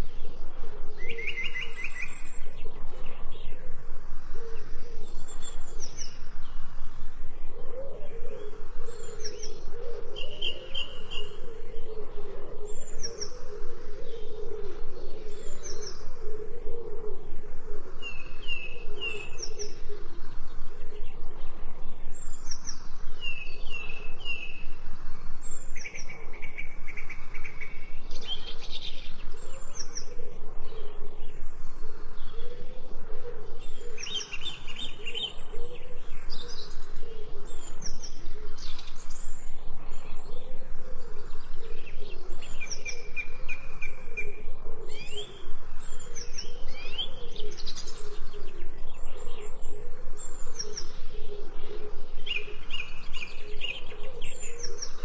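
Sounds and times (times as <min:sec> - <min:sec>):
songbirds chirping and trilling: 0:00.0 - 0:55.0.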